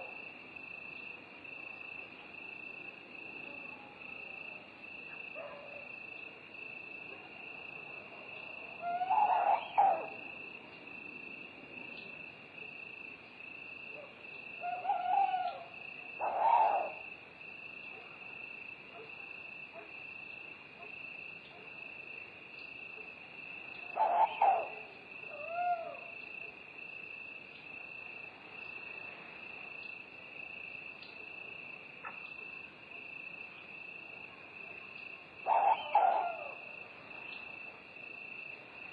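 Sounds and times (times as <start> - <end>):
crickets chirring: 0.0 - 38.9
owl hooting: 8.8 - 10.2, 14.6 - 17.0, 24.0 - 26.1, 35.4 - 36.8.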